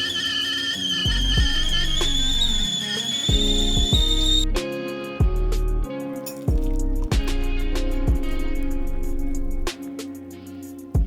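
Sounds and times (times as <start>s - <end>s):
music with steady beat: 0.8s - 11.0s
deep bass line: 3.4s - 4.6s, 5.2s - 5.9s, 6.5s - 9.7s.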